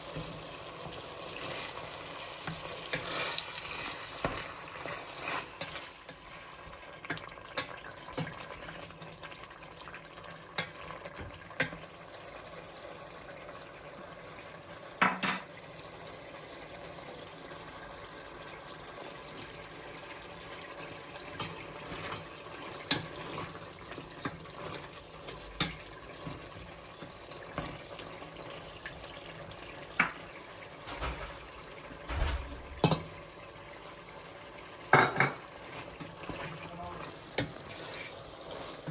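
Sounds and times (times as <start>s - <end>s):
low sizzle: 0.0s - 38.9s
metal utensil clattering on pot: 15.0s - 15.5s, 30.9s - 33.2s, 34.9s - 36.6s.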